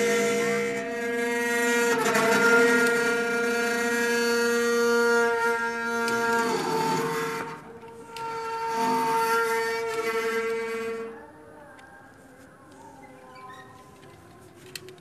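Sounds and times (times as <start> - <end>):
loud horn-like drone: 0.0 - 11.4.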